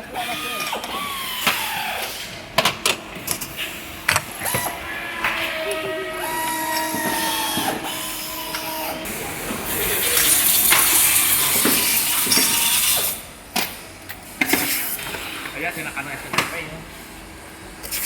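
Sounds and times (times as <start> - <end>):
machinery whining: 0.0 - 18.0
loud hissing rush: 7.2 - 13.3.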